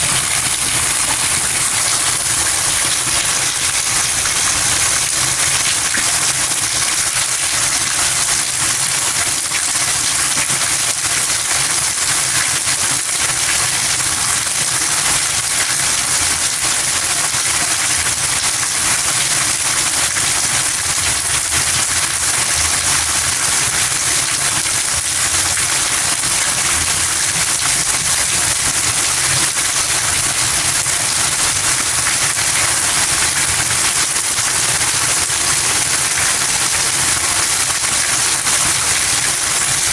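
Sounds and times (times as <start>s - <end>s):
steady rain: 0.0s - 8.3s.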